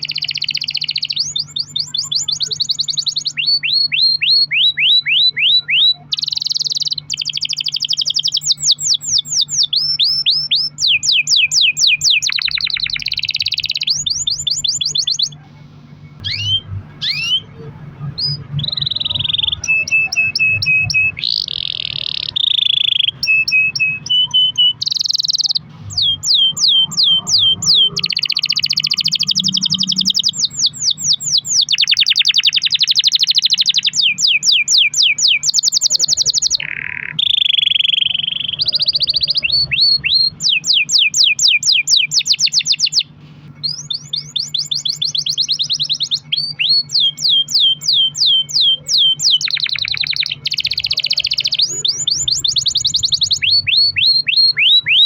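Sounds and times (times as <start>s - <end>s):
canary singing trills: 0.0s - 55.0s.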